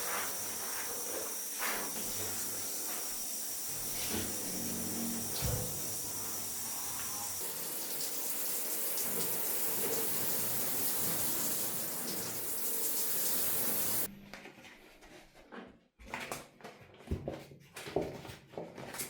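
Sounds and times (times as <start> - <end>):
water running into bathtub: 0.0 - 14.1.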